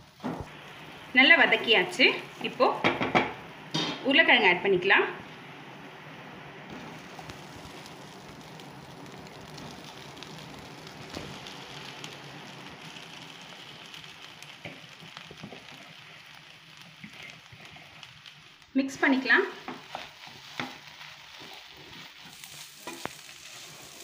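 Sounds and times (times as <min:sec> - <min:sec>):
masala sizzling in oil: 0:00.0 - 0:24.0
utensil knocking on pan: 0:02.8 - 0:04.0.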